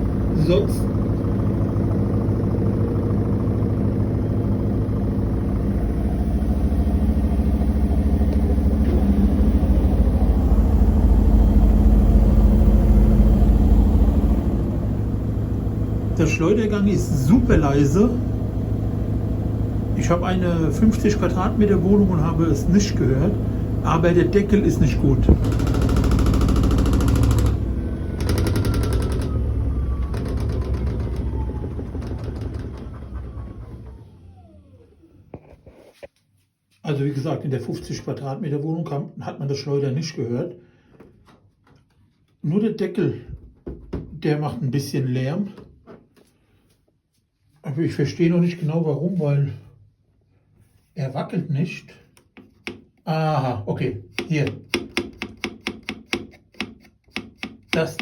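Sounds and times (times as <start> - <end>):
washing machine spinning: 0.0 - 35.3
faint whine falling in pitch: 5.6 - 32.3.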